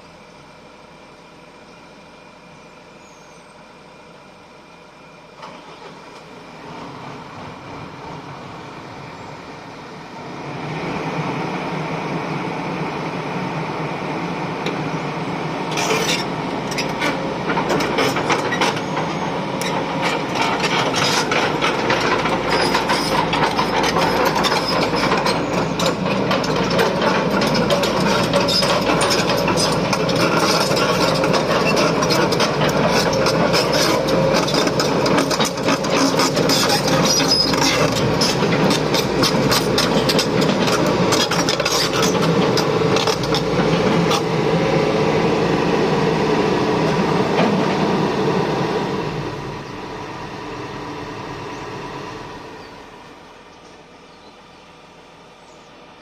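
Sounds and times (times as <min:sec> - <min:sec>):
excavator metallic clattering: 0:15.5 - 0:50.1.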